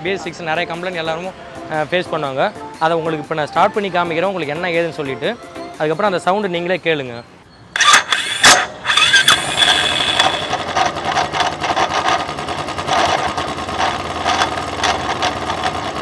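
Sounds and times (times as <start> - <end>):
mechanical clatter and ticking: 7.8 - 16.0
motorcycle engine idling: 7.8 - 16.0.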